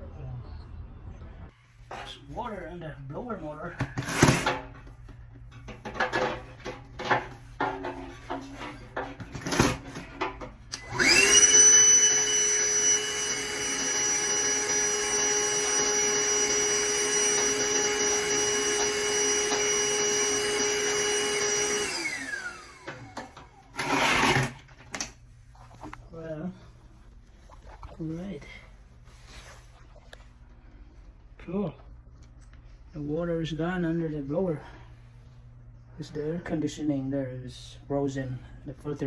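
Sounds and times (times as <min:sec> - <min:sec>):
vacuum cleaner whine: 0:10.7 - 0:24.6.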